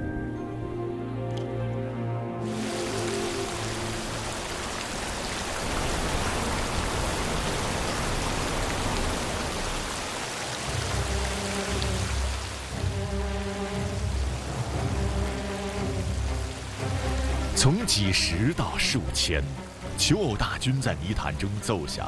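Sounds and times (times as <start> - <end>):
background music: 0.0 - 5.0, 10.5 - 22.0
heavy rain hissing: 2.4 - 22.0.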